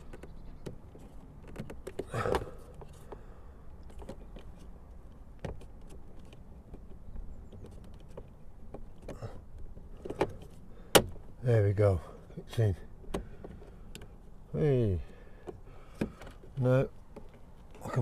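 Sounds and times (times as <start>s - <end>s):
plastic clicks and scrapes: 0.0s - 3.2s, 3.8s - 11.1s.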